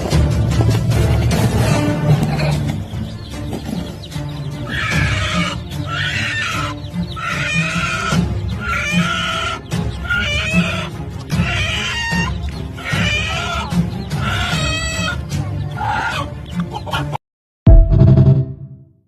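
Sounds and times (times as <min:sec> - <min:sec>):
chicken clucking: 0:01.6 - 0:17.2
music with steady beat: 0:17.7 - 0:18.8.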